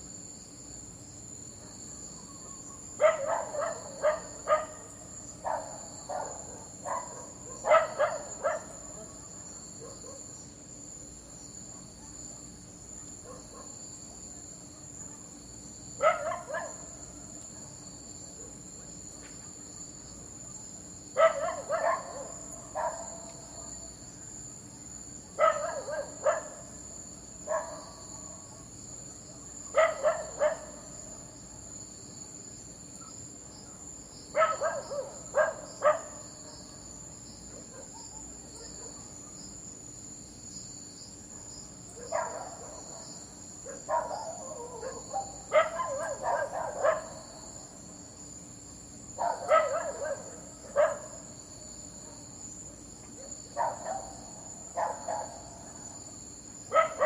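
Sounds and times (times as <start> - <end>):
dog barking: 1.6 - 10.4, 11.7 - 13.8, 16.0 - 17.0, 21.2 - 23.8, 25.4 - 26.8, 27.4 - 28.7, 29.7 - 30.9, 34.3 - 39.3, 41.3 - 47.3, 49.2 - 51.2, 53.2 - 55.8, 56.7 - 57.0.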